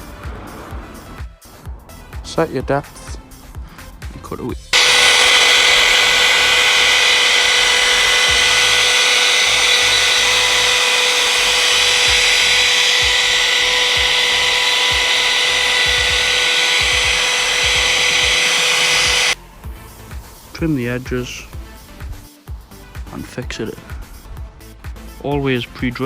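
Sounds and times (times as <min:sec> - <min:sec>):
router cutting hiss: 0:04.8 - 0:19.4
router whining: 0:04.8 - 0:19.4.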